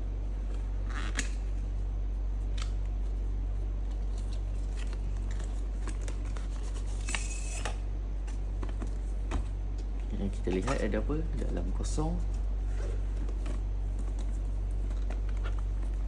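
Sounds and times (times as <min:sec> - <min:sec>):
low electrical hum: 0:00.0 - 0:16.0
cardboard packaging rustling: 0:10.2 - 0:16.0
cardboard scraping: 0:10.2 - 0:16.0.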